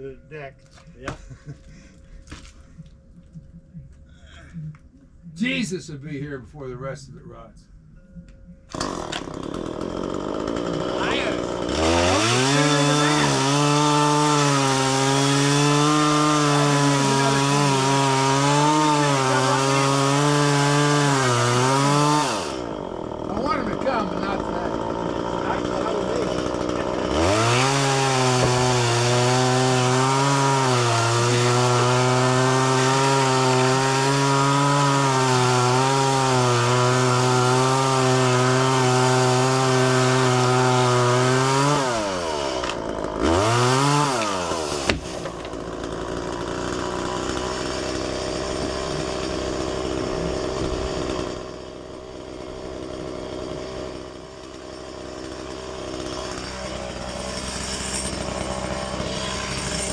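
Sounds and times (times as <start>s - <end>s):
chainsaw revving and cutting: 8.7s - 59.9s.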